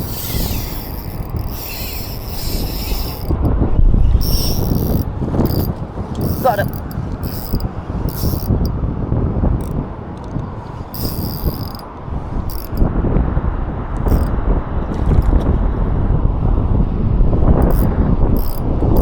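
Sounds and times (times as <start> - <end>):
fishing reel ticking and whirring: 0.0 - 8.8, 9.6 - 12.9, 14.0 - 15.4, 17.6 - 19.0.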